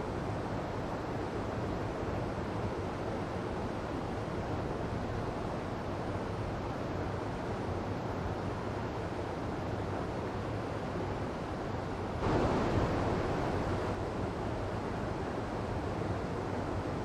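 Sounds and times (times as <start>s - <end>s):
waterfall rushing and splashing: 12.2s - 14.0s.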